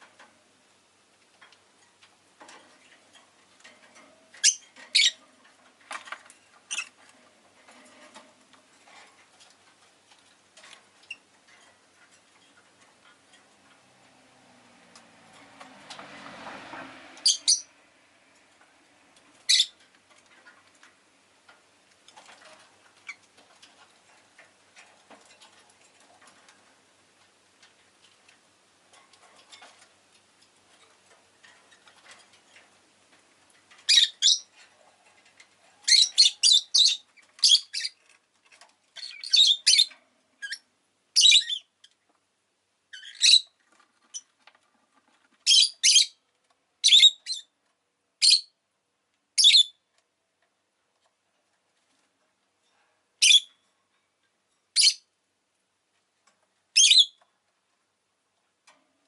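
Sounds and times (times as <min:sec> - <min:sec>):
bird chirping: 0:04.4 - 0:05.2, 0:17.2 - 0:17.7, 0:19.4 - 0:19.8, 0:33.9 - 0:34.5, 0:35.8 - 0:38.1, 0:39.0 - 0:40.6, 0:41.2 - 0:42.0, 0:42.9 - 0:44.3, 0:45.4 - 0:46.2, 0:46.8 - 0:47.5, 0:48.2 - 0:48.6, 0:49.4 - 0:49.8, 0:53.2 - 0:53.6, 0:54.8 - 0:55.1, 0:56.8 - 0:57.2.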